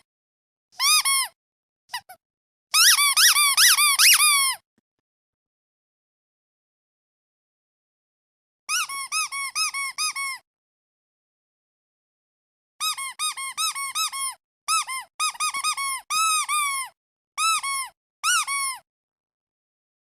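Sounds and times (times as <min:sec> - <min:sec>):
rubber duck toy squeaking: 0:00.8 - 0:04.6, 0:08.7 - 0:10.4, 0:12.8 - 0:18.8.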